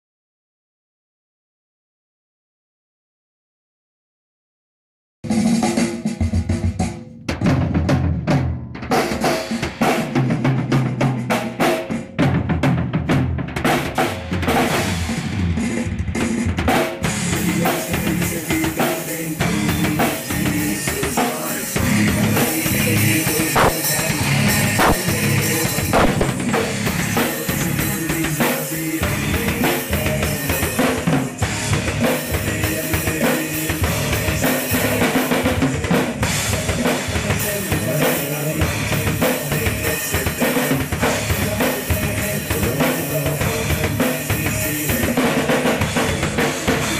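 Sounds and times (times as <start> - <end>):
bass drum: 21.8 - 28.4, 29.0 - 38.0
snare hits and rimshots: 23.4 - 24.2, 24.8 - 26.7.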